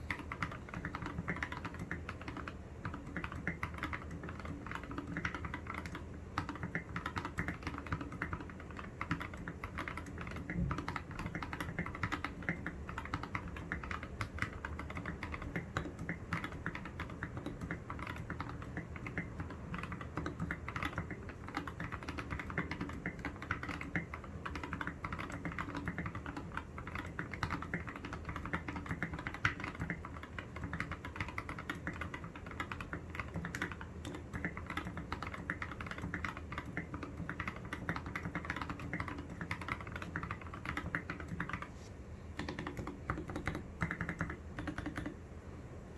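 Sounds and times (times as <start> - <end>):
fast typing on mechanical keyboard: 0.0 - 41.8, 42.4 - 45.2.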